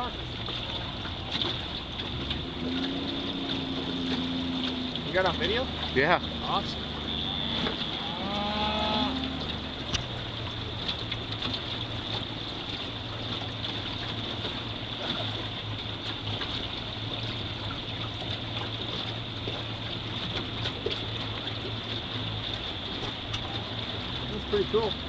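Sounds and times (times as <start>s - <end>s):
river water rushing: 0.0s - 25.0s
short water splashes: 0.0s - 25.0s
low hum: 0.1s - 22.3s.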